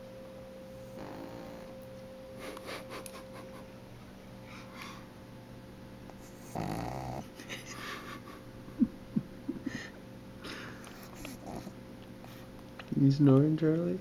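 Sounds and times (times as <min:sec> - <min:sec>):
puppy snoring: 0:00.7 - 0:01.8, 0:06.1 - 0:07.5, 0:11.0 - 0:12.4
wheezy breaths: 0:04.4 - 0:05.1.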